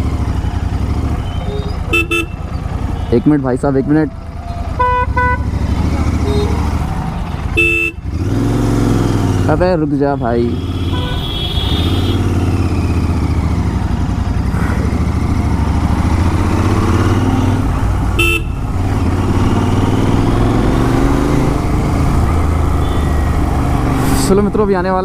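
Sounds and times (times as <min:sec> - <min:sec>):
motorcycle engine running: 0:00.0 - 0:25.0
vehicle horn beeping: 0:01.2 - 0:03.4, 0:04.7 - 0:05.6, 0:06.2 - 0:08.1, 0:10.1 - 0:12.3, 0:18.1 - 0:19.4, 0:22.8 - 0:23.2.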